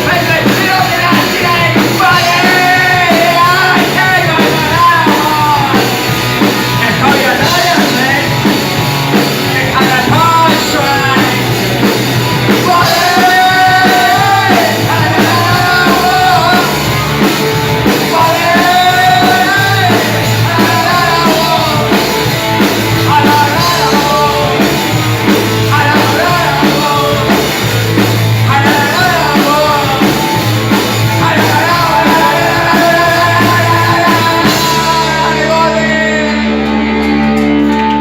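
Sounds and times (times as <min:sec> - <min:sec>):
person singing: 0:00.0 - 0:38.0
punk rock band playing: 0:00.0 - 0:38.0.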